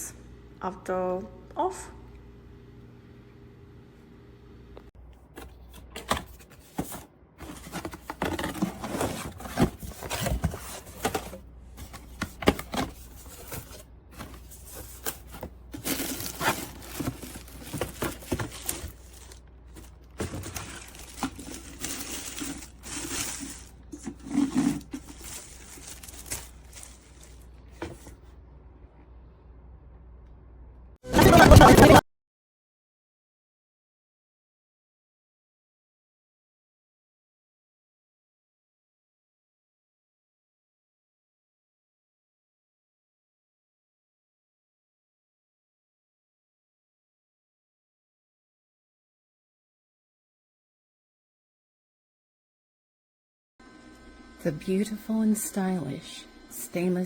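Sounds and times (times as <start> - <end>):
objects being moved about: 5.3 - 28.3.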